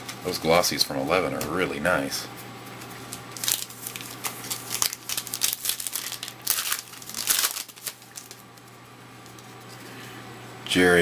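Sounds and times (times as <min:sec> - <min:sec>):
foil wrapper crinkling: 0:02.8 - 0:09.7.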